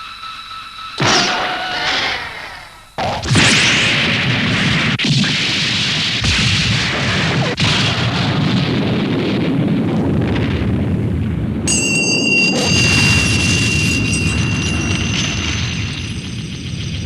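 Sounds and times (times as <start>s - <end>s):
explosion-like roar: 1.0s - 11.7s.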